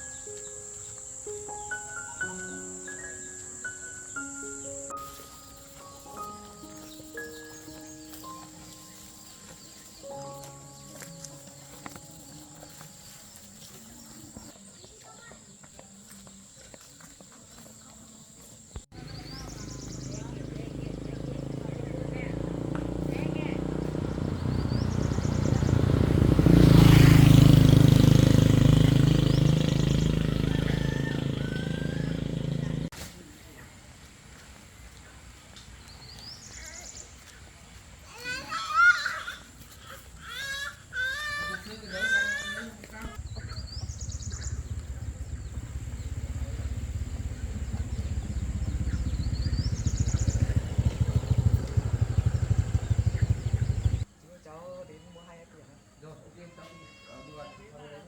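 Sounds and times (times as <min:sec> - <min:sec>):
vehicle engine passing by: 0:18.9 - 0:32.9, 0:41.2 - 0:54.1.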